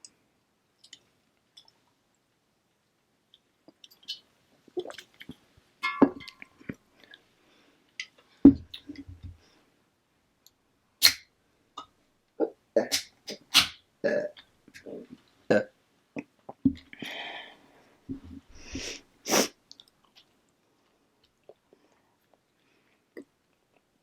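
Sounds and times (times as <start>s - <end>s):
chewing and mouth sounds: 4.8s - 5.4s.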